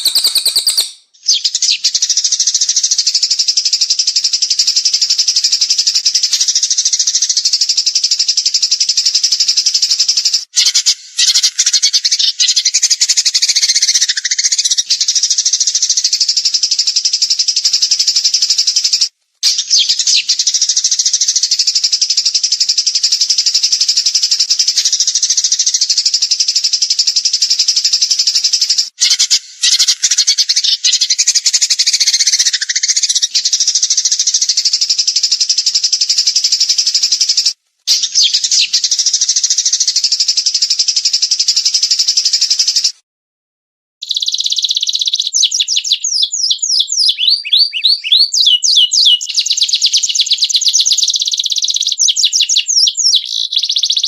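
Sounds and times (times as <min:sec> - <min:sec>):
songbird rapid trills: 0:00.0 - 0:01.4.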